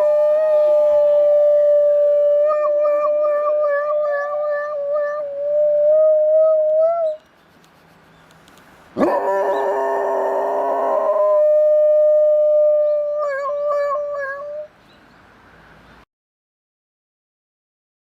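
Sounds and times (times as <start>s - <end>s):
dog howling: 0.0s - 7.2s, 9.0s - 14.7s.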